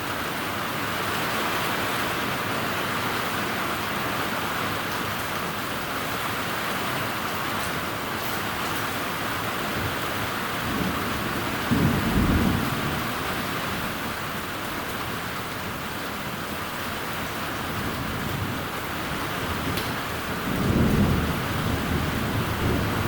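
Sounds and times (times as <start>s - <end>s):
heavy rain: 0.0s - 23.0s
thunder rumbling: 10.6s - 15.2s, 17.6s - 23.0s.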